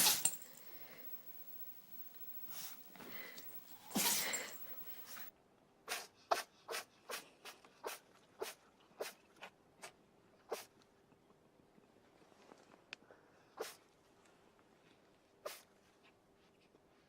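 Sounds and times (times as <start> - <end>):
animal sneezing: 0.0 - 5.3, 5.9 - 9.2, 10.5 - 10.7, 13.6 - 13.8.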